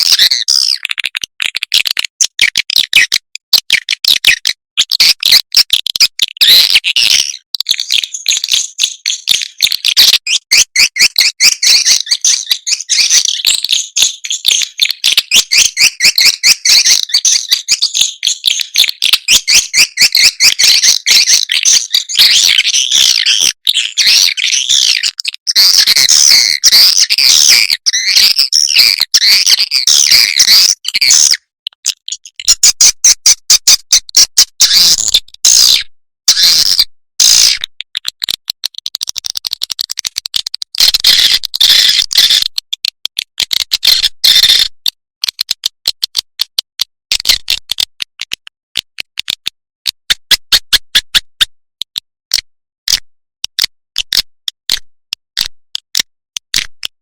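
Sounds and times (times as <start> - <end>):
swiftlet chirping and clicking calls: 9.0 - 42.6, 43.7 - 44.7.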